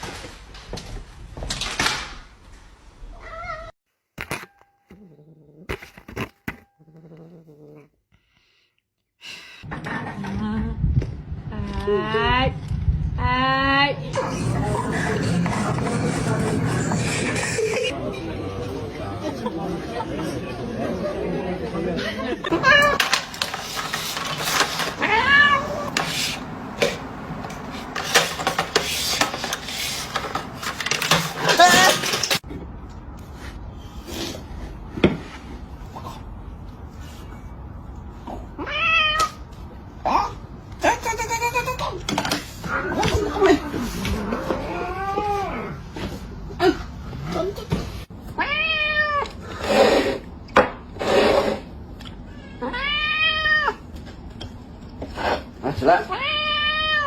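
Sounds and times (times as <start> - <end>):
cat meowing: 3.1 - 3.8, 25.0 - 26.0, 48.4 - 49.3, 52.5 - 53.8.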